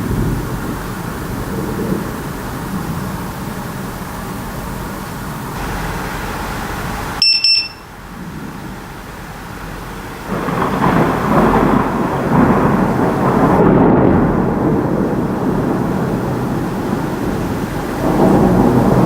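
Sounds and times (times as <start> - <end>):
thunder rumbling: 0.0 - 7.2, 7.8 - 19.0
steady rain: 0.0 - 19.0
short high electronic beeps: 7.2 - 7.9.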